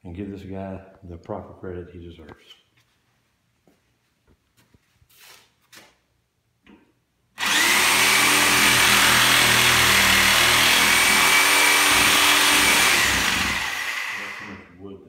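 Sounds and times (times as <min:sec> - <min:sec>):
reciprocating saw cutting wood: 0:07.4 - 0:14.6.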